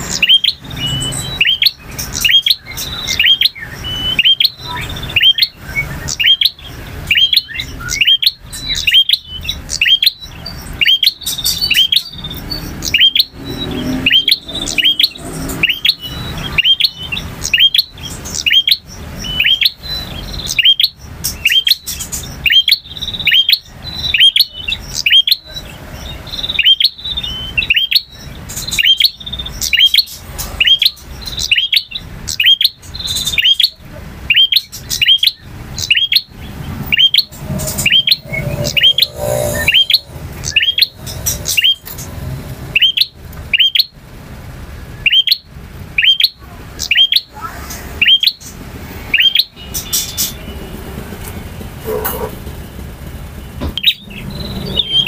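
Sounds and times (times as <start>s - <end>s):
bird chirping sharp notes: 0.0s - 44.0s, 44.9s - 51.2s, 53.3s - 55.0s.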